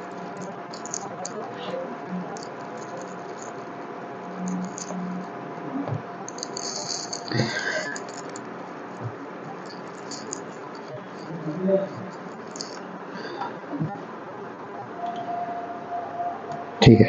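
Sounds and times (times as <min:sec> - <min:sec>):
small clicks and rattling: 0:00.0 - 0:01.4, 0:02.2 - 0:03.7, 0:04.4 - 0:05.0, 0:06.3 - 0:11.3, 0:12.2 - 0:12.8
steady background hum: 0:00.0 - 0:17.0.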